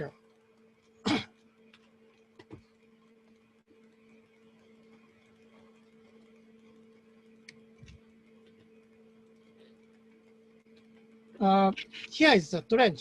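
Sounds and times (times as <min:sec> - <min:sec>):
faint steady hum: 0:00.0 - 0:13.0
faint clicks: 0:01.7 - 0:11.2.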